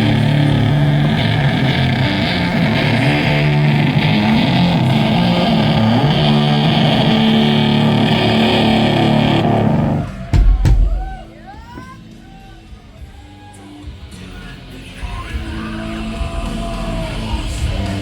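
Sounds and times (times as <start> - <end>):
heavy low thumps: 0.0 - 11.3
distorted electric guitar chords: 0.0 - 11.4, 13.8 - 18.0.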